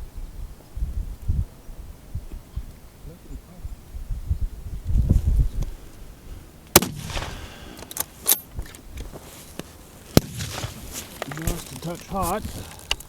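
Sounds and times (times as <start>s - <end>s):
rifle shots: 6.7s - 7.6s, 10.1s - 10.8s.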